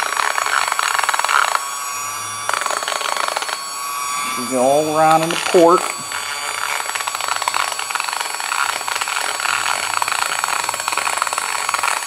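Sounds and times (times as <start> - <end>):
rotary tool grinding metal: 0.0 - 12.0.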